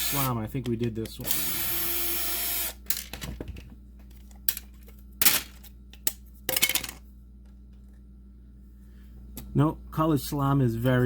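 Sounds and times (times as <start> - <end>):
plastic parts clicking and clattering: 2.9 - 7.0.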